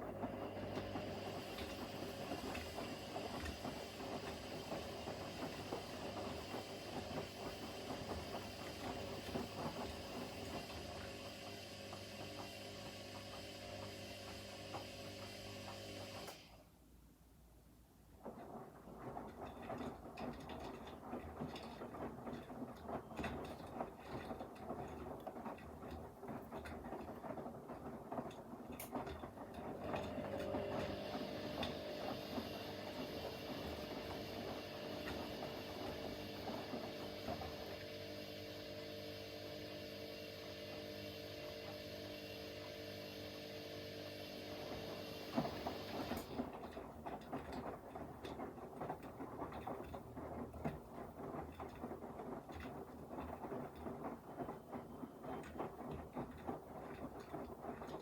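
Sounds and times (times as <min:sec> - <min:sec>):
washing machine drum tumbling: 0:21.0 - 0:58.0.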